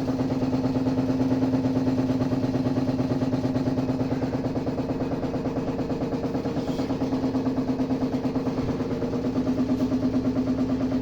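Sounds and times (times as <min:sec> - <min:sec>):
gas water heater humming: 0:00.0 - 0:11.0.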